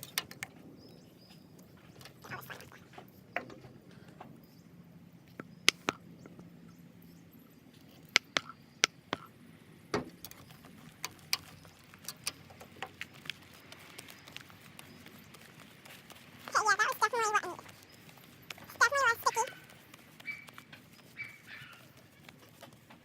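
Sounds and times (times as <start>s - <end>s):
containers and tools clicking: 10.1s - 23.0s.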